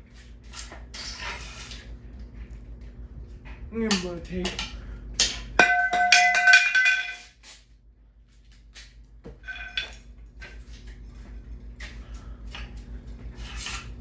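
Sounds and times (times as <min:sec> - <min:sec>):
metal fan parts clattering: 0:03.6 - 0:07.6, 0:08.7 - 0:14.0.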